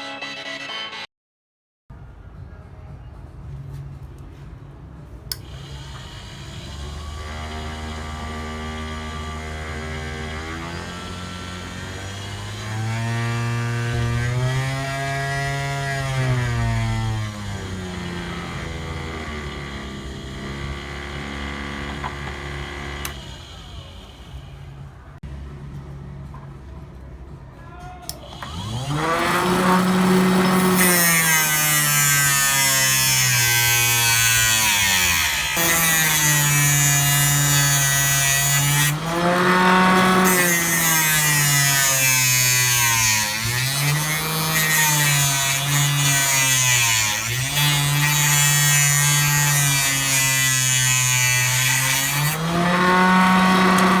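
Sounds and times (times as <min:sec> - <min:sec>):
cutting machine motor whine: 0:17.2 - 0:24.8, 0:28.3 - 0:42.0, 0:50.9 - 0:54.0.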